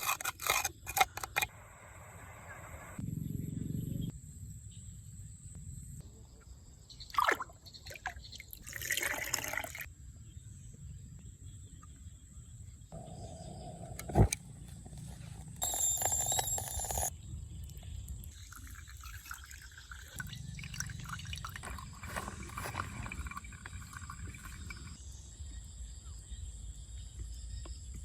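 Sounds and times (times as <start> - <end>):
water pouring and dripping: 18.2 - 25.0.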